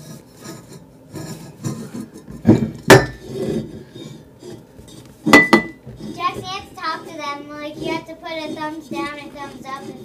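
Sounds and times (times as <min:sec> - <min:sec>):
cooking pots knocking: 0:05.3 - 0:07.2.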